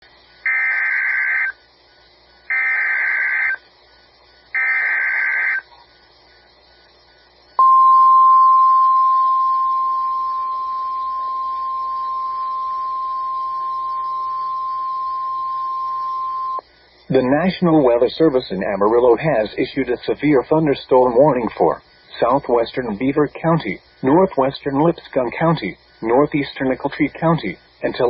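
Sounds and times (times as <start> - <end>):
harsh buzzing data screech: 0.4 - 1.7, 2.4 - 3.7, 4.5 - 5.8, 10.0 - 21.2
steady high warning tone: 0.4 - 1.7, 2.4 - 3.7, 4.5 - 5.8, 7.6 - 28.0.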